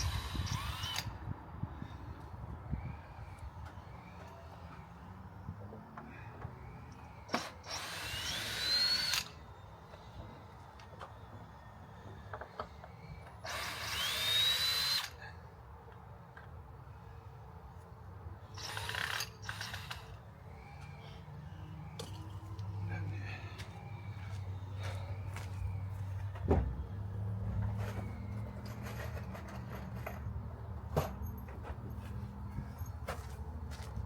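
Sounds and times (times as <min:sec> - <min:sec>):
power drill whining: 0:00.0 - 0:01.2, 0:06.4 - 0:10.4, 0:12.0 - 0:15.2, 0:18.6 - 0:25.8.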